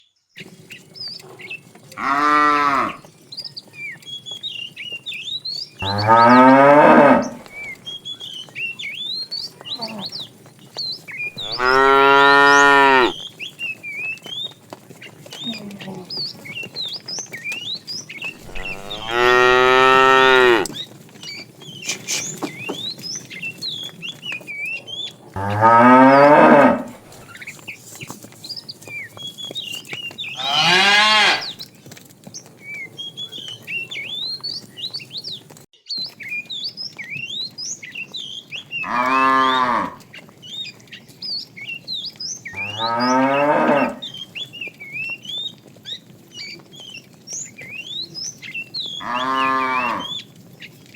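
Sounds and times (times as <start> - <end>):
cattle mooing: 2.0 - 3.0, 5.8 - 7.5, 11.4 - 13.2, 18.4 - 20.8, 25.4 - 27.2, 30.4 - 31.6, 38.8 - 40.0, 42.6 - 44.0, 49.0 - 50.2
high chirping: 11.4 - 13.2, 18.4 - 20.8.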